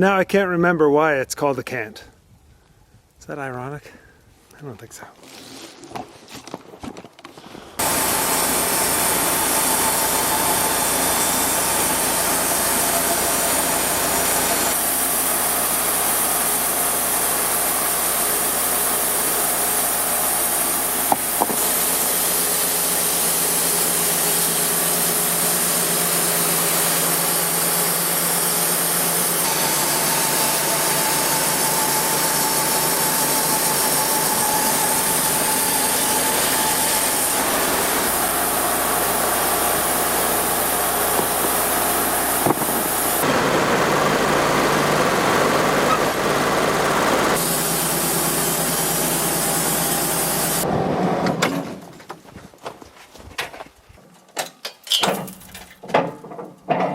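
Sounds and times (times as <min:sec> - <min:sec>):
band sawmill running: 0:07.4 - 0:51.5.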